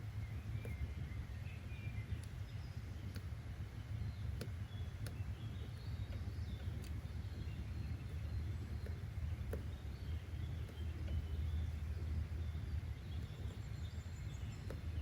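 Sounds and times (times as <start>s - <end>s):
faint birds chirping: 0.0s - 15.0s
low outdoor rumble: 0.0s - 15.0s
light ticks: 2.0s - 3.4s, 4.2s - 7.6s, 8.2s - 15.0s.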